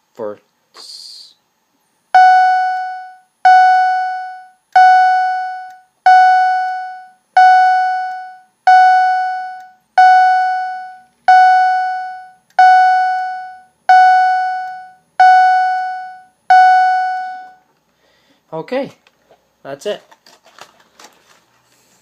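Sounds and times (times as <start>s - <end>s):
fire alarm chime: 2.2s - 17.6s.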